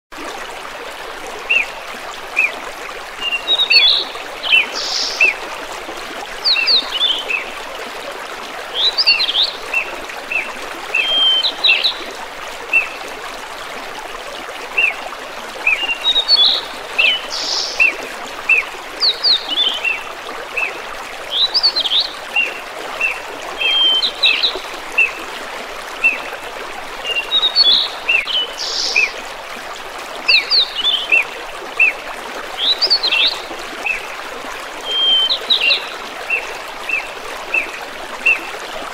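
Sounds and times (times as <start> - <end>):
brook babbling: 0.1 - 38.9
songbirds chirping: 15.7 - 18.0.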